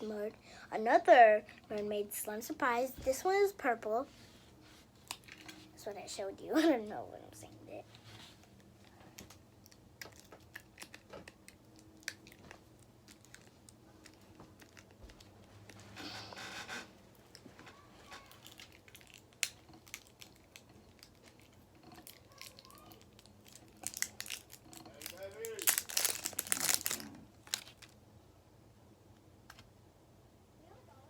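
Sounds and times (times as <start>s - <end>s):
plastic packaging crinkling: 5.0s - 5.6s, 8.5s - 15.9s, 18.0s - 28.0s
packaging rustle: 18.1s - 28.0s.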